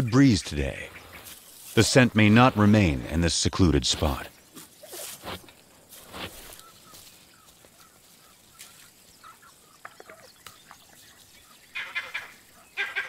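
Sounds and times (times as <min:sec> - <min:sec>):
wild animal chirps: 0:07.8 - 0:13.0
harsh animal calls: 0:11.6 - 0:13.0.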